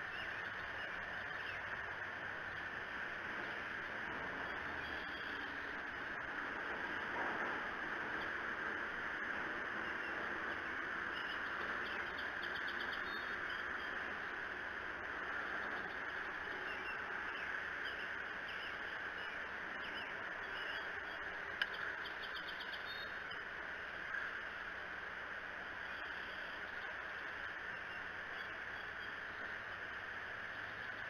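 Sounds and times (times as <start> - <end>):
steady hiss: 0.0 - 31.0
bird chirps and trills: 4.2 - 6.2, 9.3 - 14.4, 15.1 - 23.5.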